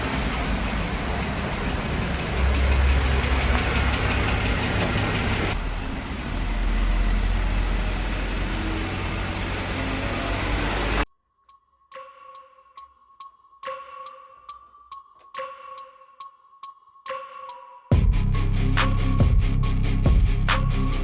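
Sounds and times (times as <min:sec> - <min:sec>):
fast engine ticking: 0:00.0 - 0:10.1
car engine running: 0:00.0 - 0:11.0.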